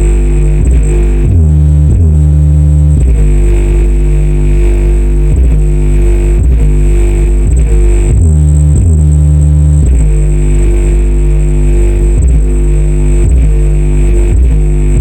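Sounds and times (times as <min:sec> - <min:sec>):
subwoofer playing deep bass notes: 0:00.0 - 0:15.0.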